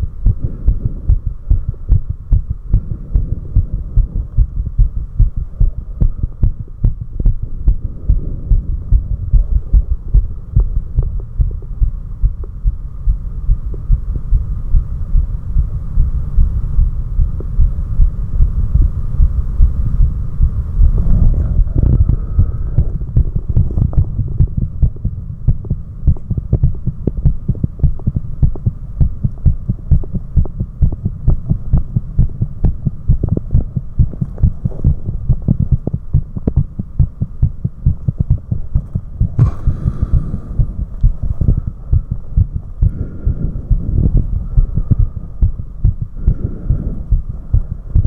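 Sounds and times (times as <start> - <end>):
faint hum: 0.0 - 48.0
heart beating fast: 0.0 - 48.0.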